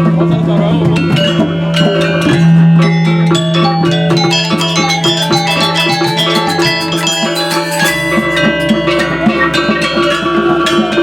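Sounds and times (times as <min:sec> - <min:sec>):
gamelan dance music: 0:03.4 - 0:11.0.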